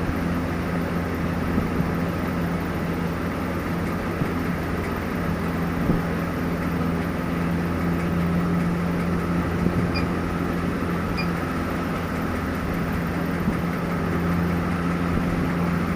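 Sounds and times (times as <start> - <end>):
short high beeps: 9.9 - 10.1.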